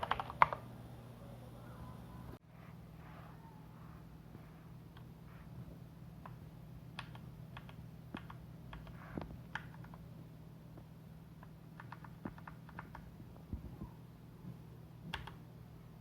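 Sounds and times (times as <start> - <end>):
mechanical keyboard typing: 0.0 - 0.6, 7.0 - 10.0, 11.8 - 13.1, 15.1 - 15.4.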